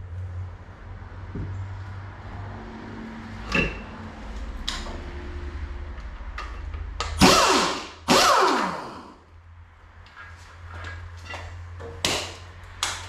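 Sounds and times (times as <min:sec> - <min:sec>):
power tool bursts: 0:07.2 - 0:09.2.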